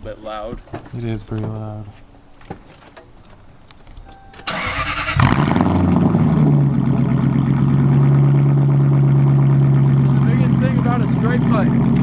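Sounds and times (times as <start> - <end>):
starter cranking: 4.5 - 5.4
car engine loud idle: 4.5 - 12.0.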